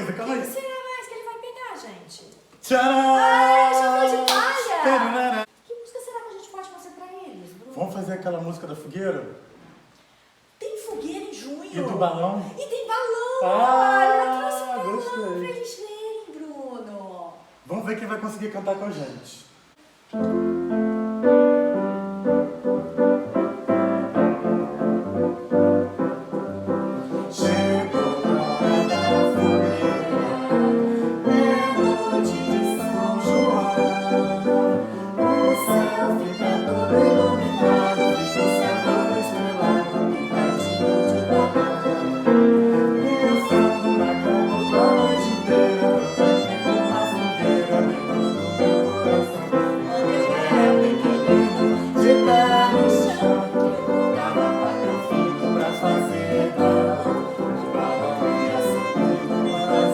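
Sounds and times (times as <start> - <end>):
fiddle and piano music: 20.2 - 59.9.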